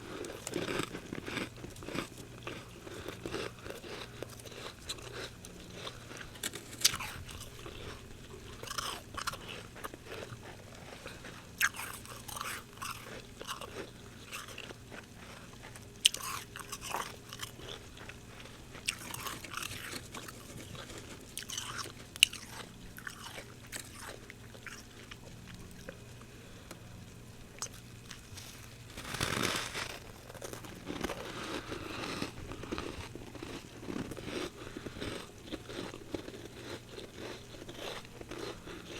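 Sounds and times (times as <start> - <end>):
frost being crunched: 27.7 - 34.4.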